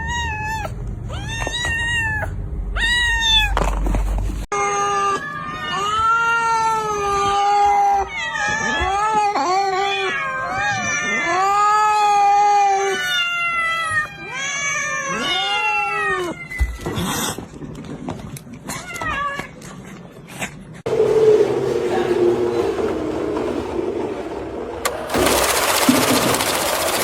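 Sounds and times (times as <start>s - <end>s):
cat yowling: 0.0s - 3.6s.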